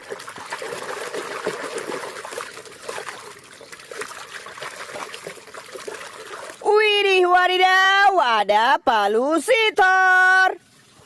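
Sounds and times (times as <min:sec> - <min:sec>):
water trickling and splashing: 0:00.0 - 0:07.8, 0:10.2 - 0:11.0.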